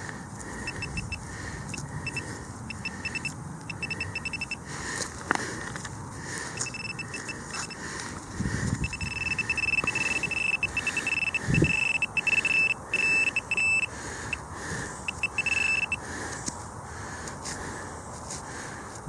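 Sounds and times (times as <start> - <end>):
metal detector beeping: 0.6 - 4.7, 6.6 - 7.9, 8.7 - 16.0.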